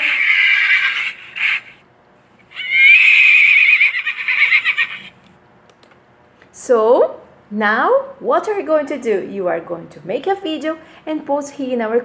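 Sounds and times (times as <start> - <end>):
horse whinnying: 0.0 - 1.8, 2.5 - 5.2.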